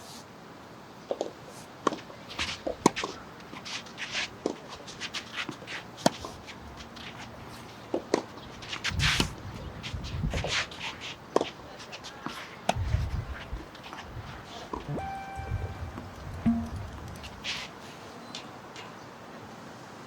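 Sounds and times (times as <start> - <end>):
sharp knocks: 14.9 - 17.1.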